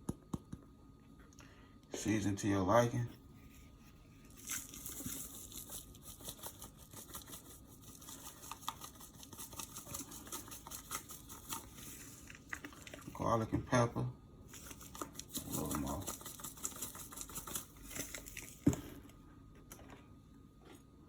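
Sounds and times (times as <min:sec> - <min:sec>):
spice shaker rattling: 0:04.3 - 0:12.9, 0:14.5 - 0:18.6.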